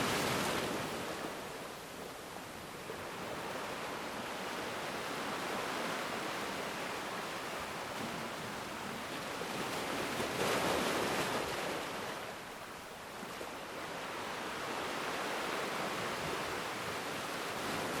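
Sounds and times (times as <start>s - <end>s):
ocean waves breaking on beach: 0.0s - 18.0s.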